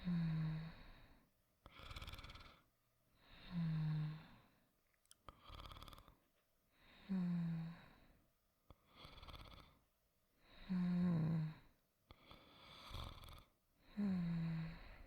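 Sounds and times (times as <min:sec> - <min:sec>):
person snoring softly: 0:00.0 - 0:04.6, 0:05.3 - 0:06.2, 0:06.8 - 0:09.8, 0:10.4 - 0:15.0.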